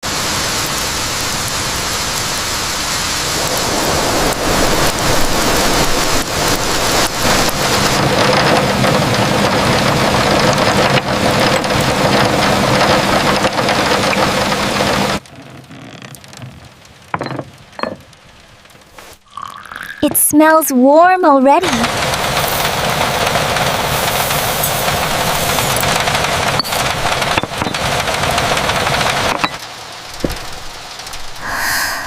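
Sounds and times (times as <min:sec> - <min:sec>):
heavy rain pouring: 0:00.0 - 0:20.6, 0:21.3 - 0:32.0.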